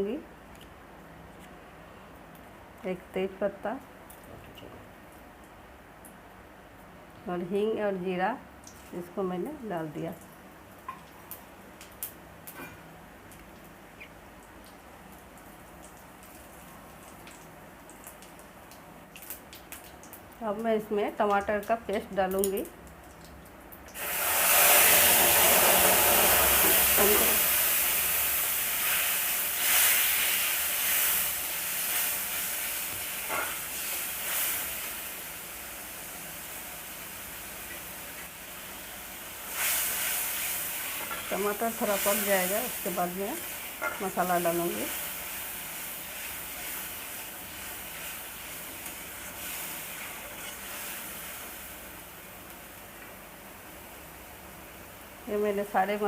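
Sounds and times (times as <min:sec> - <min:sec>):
paste sizzling in hot oil: 0:23.9 - 0:52.1.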